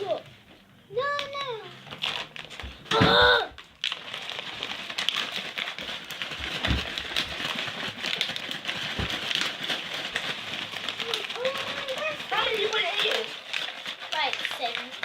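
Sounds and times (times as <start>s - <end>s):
crackling crinkling noise: 0.0s - 2.9s, 3.6s - 15.0s
child crying out: 2.9s - 3.6s.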